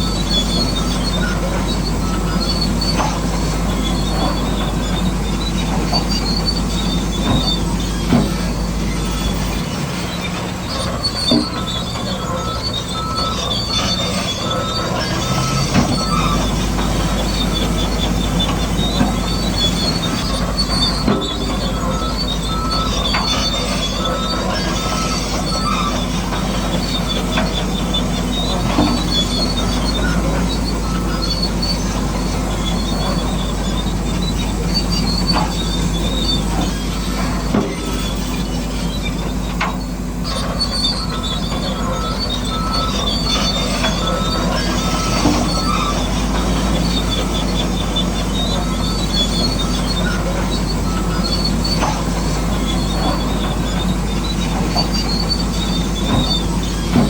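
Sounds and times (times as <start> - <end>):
bulldozer motor hum: 0.0 - 57.0
metal tracks squealing and clanking: 0.0 - 57.0.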